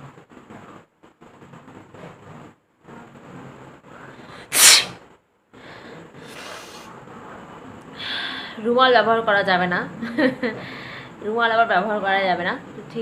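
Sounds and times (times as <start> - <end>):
woman sneezing: 4.5 - 5.0.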